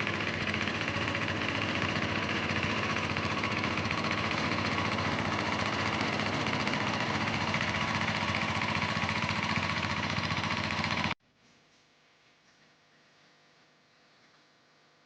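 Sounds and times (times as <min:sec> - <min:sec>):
diesel engine running: 0:00.0 - 0:11.2
water pump: 0:00.0 - 0:11.2.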